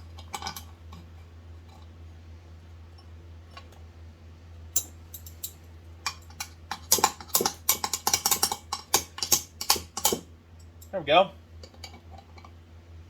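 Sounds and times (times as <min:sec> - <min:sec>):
small metal clicks and taps: 0:04.8 - 0:10.9, 0:11.6 - 0:12.6.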